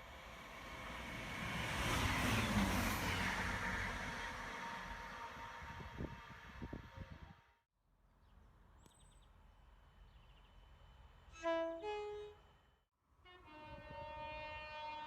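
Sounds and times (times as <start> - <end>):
train rumbling: 0.0 - 7.4
train horn blasts: 3.1 - 7.6, 11.3 - 12.5, 13.2 - 15.0.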